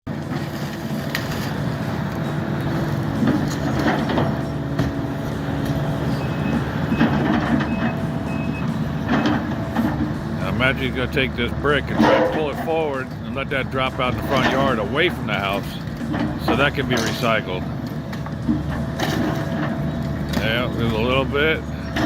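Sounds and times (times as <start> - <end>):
diesel engine running: 0.0 - 22.0
knocks and clanks: 0.1 - 22.0
backup alarm beeping: 4.4 - 9.7.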